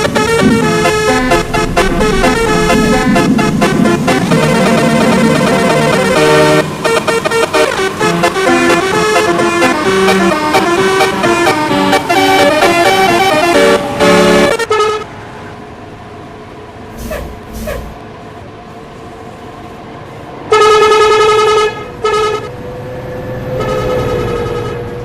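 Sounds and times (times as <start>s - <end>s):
bus air horn melody: 0.0s - 15.1s, 20.5s - 22.6s, 23.5s - 25.0s.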